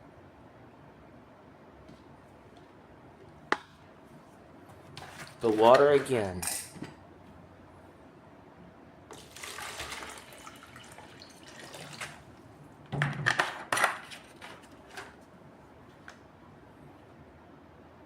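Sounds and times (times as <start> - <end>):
water pouring into container: 9.2 - 12.2.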